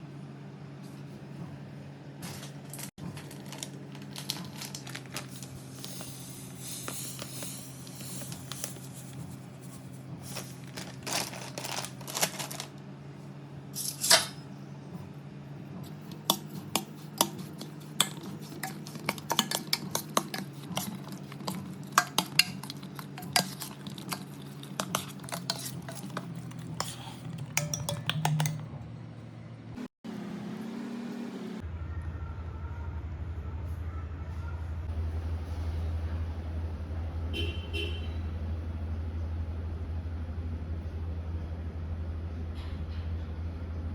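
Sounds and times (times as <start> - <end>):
steady low hum: 0.0 - 29.9.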